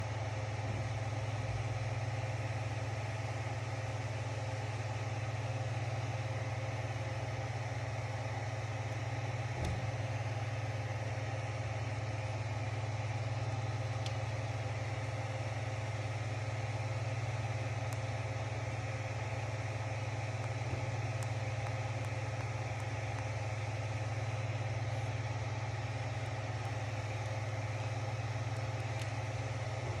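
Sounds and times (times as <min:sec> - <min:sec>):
low mechanical hum: 0:00.0 - 0:30.0.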